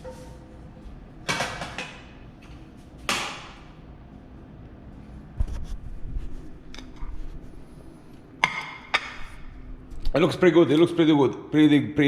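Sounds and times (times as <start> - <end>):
kitchen items knocking and clicking: 1.2 - 2.2.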